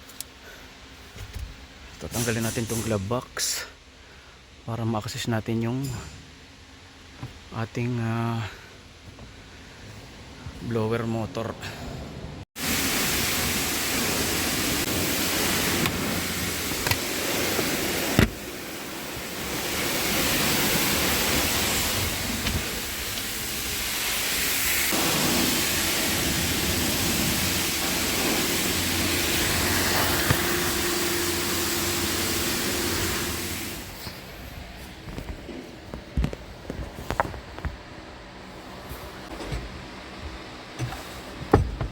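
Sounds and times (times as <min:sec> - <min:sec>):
blower fan rushing air: 0:06.6 - 0:41.9
plastic glove box clicks and knocks: 0:40.8 - 0:41.9.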